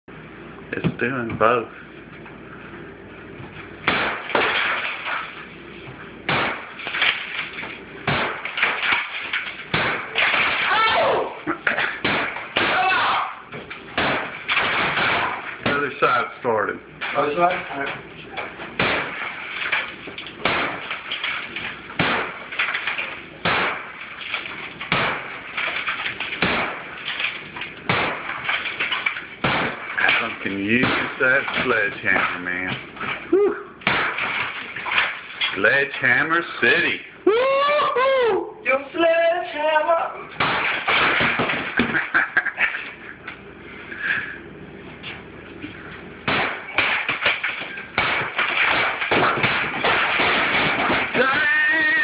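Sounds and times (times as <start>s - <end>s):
sledgehammer crashing hits: 3.8s - 5.4s, 6.3s - 11.2s, 11.8s - 13.2s, 13.9s - 16.2s, 18.8s - 32.8s, 33.8s - 35.2s, 40.4s - 41.8s, 46.3s - 52.0s
debris rattling: 3.9s - 5.6s, 6.3s - 16.2s, 17.0s - 35.8s, 40.3s - 43.0s, 46.3s - 52.0s.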